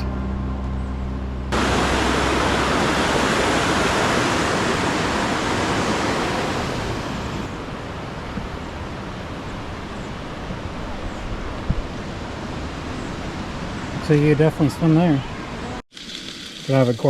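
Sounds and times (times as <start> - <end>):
flowing water rushing: 1.5 - 8.3.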